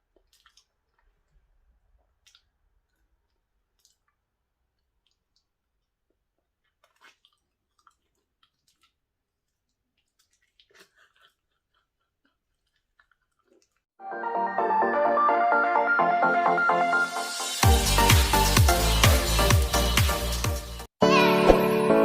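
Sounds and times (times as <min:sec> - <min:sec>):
person chewing banana: 0:00.0 - 0:14.0
loud electronic music: 0:14.2 - 0:21.3.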